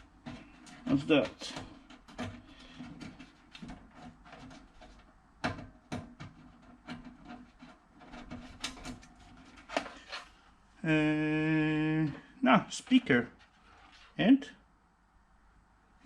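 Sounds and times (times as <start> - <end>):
plastic and metal parts clicking: 0.2 - 10.3.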